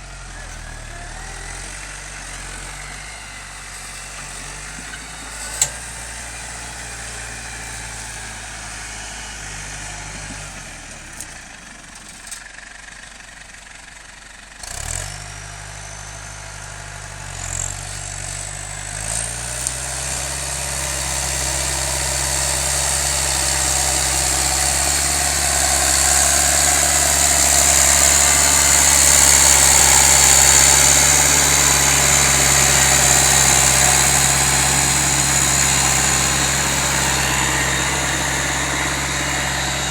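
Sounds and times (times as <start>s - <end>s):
tractor diesel engine: 0.0s - 39.9s.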